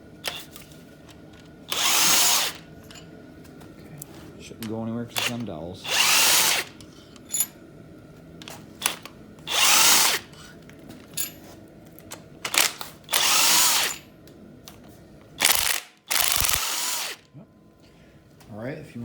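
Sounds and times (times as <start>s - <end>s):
power tool spinning socket: 0.2s - 0.6s, 1.4s - 2.6s, 5.2s - 7.3s, 8.8s - 10.3s, 12.5s - 14.0s, 15.4s - 17.2s.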